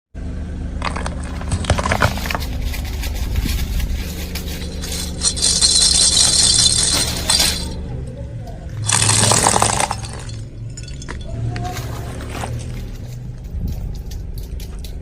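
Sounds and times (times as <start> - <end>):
low engine hum: 0.2 - 15.0
tyre crushing crunchy objects: 0.8 - 7.8, 8.8 - 13.5.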